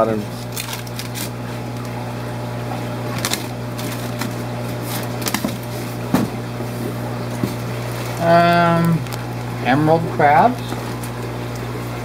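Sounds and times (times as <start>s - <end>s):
steady low hum: 0.0s - 12.0s
boxes and packing rustling: 3.1s - 8.4s.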